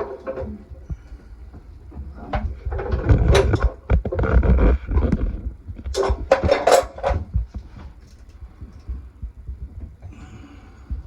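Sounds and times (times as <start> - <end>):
hose fittings and tools clanking: 0.0 - 1.0, 5.9 - 8.8.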